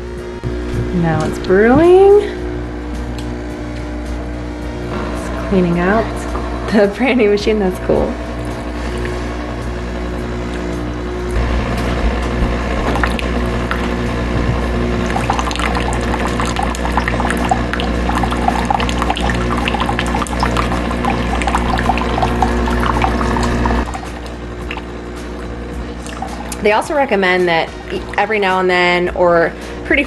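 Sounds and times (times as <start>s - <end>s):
coffee machine pump hum: 0.0s - 30.0s
hot water splashing into bowl: 15.1s - 24.9s.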